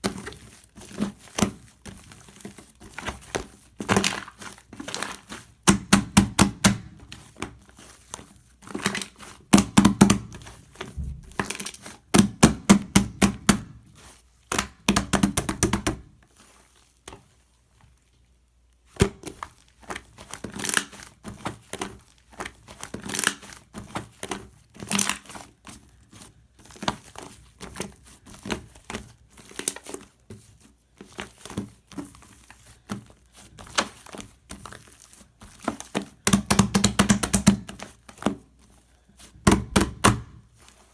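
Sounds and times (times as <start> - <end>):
slime squelching and popping: 0.0 - 7.6, 32.8 - 38.2, 39.4 - 40.5.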